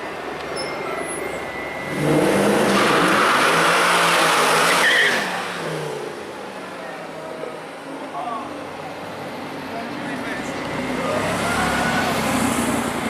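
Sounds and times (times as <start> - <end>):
car engine accelerating hard: 1.8 - 7.5.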